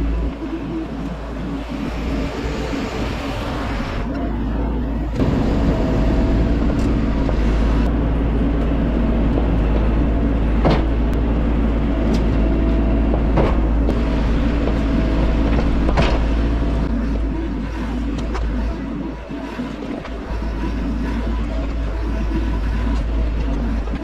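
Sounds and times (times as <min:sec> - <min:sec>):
heavy machinery engine rumbling: 0:00.0 - 0:24.0.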